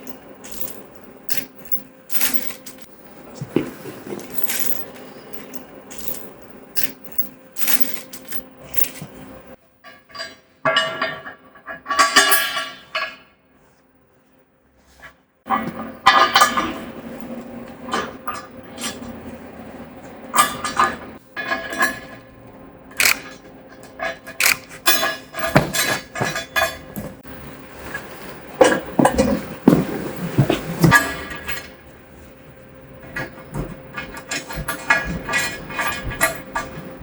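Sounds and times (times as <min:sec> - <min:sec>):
metal clinking on metal: 0:00.0 - 0:02.9, 0:04.1 - 0:09.1, 0:24.4 - 0:27.0
faint steady hum: 0:00.0 - 0:09.6.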